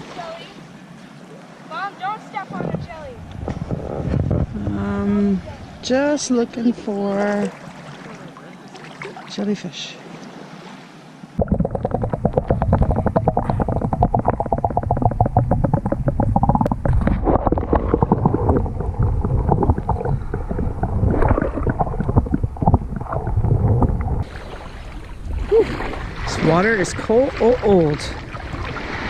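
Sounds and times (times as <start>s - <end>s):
underwater bubbling: 11.3s - 29.0s.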